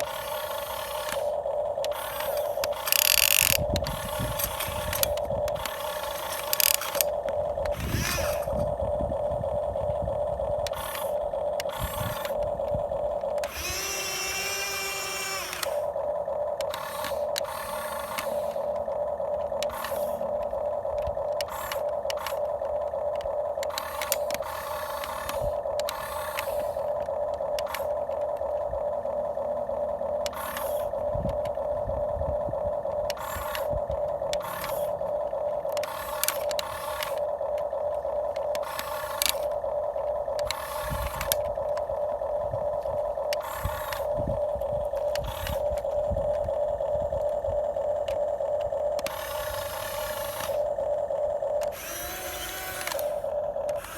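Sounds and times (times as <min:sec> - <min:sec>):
electric motors whining: 0:00.0 - 0:53.9
higher louder motor whine: 0:00.0 - 0:53.9
short rasping bursts: 0:51.7 - 0:53.9.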